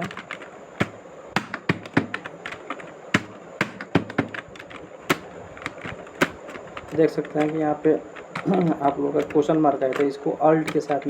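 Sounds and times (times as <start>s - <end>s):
keyboard key clicks: 0.0s - 11.0s.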